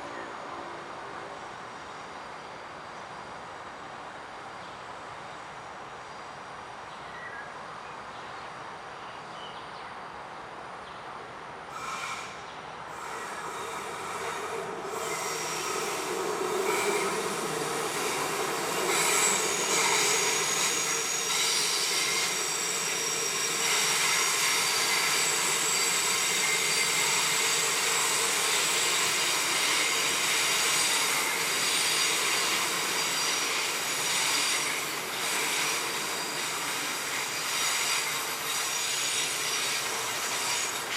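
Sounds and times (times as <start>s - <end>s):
train brake squeal: 11.7s - 40.9s.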